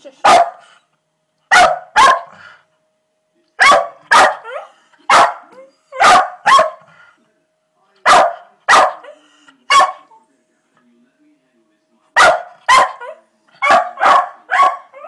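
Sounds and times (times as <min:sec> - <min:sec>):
dog barking: 0:00.2 - 0:00.6, 0:01.5 - 0:02.4, 0:03.6 - 0:06.9, 0:08.0 - 0:10.1, 0:12.2 - 0:15.0.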